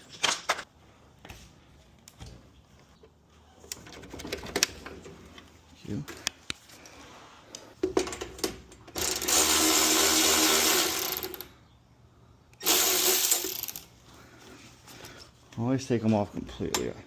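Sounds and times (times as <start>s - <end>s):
power driver running: 9.0s - 11.5s, 12.6s - 13.8s.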